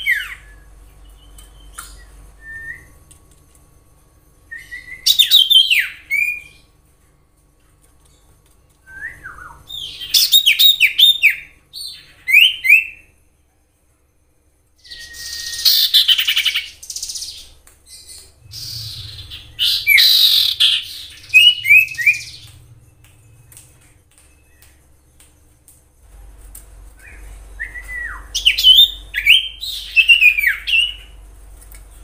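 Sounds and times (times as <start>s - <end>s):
bird singing whistled notes: 4.5s - 6.7s, 8.8s - 13.1s, 14.8s - 23.6s, 27.0s - 31.2s
bird buzzy chatter: 14.8s - 31.2s.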